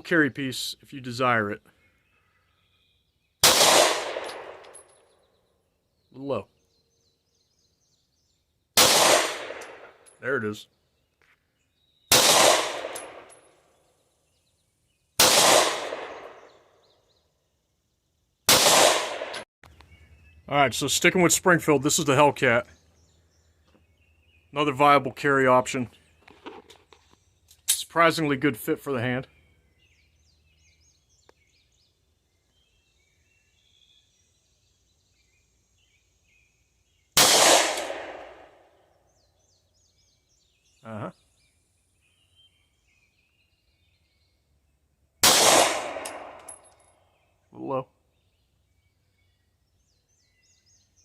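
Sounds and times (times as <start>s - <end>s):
faint birdsong: 0.0s - 51.0s
pistol shots: 3.4s - 4.8s, 8.8s - 10.0s, 12.1s - 13.4s, 15.2s - 16.6s, 18.5s - 19.4s, 37.2s - 38.6s, 45.2s - 46.6s.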